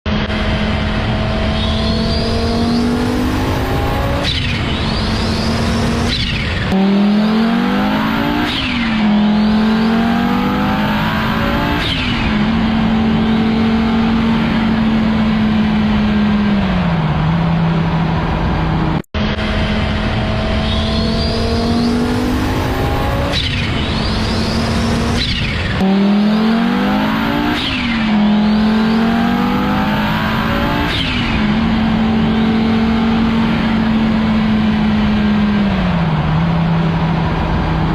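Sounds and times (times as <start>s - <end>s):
rally car engine accelerating: 0.1s - 37.9s.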